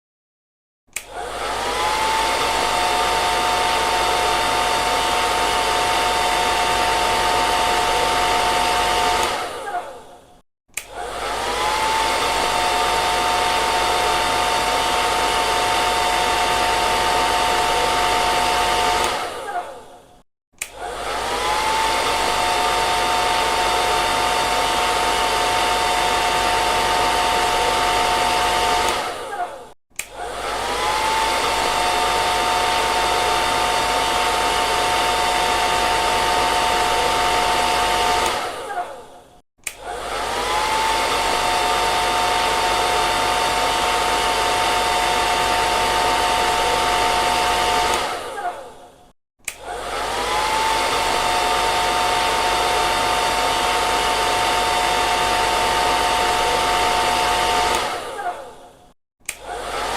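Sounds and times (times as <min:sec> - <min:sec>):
hair dryer switch click: 0:00.9 - 0:01.8, 0:09.2 - 0:09.4, 0:10.7 - 0:11.0, 0:19.0 - 0:19.2, 0:20.6 - 0:20.9, 0:28.9 - 0:29.2, 0:30.0 - 0:30.3, 0:38.2 - 0:38.6, 0:39.6 - 0:39.9, 0:47.9 - 0:48.5, 0:49.4 - 0:49.8, 0:57.7 - 0:58.3, 0:59.2 - 0:59.8
hair dryer blowing: 0:00.9 - 0:59.9.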